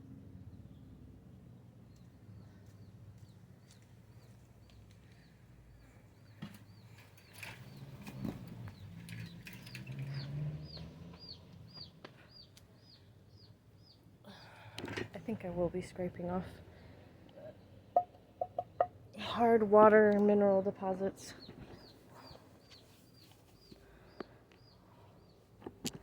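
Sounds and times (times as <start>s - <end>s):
bird chirping: 1.9s - 14.6s, 21.3s - 25.4s.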